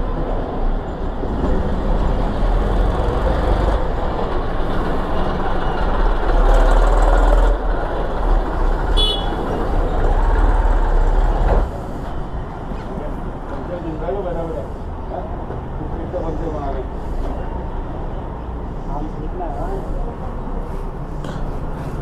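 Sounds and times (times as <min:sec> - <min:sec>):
road traffic rumble: 0:00.0 - 0:22.0
vehicle horn toot: 0:09.0 - 0:09.4.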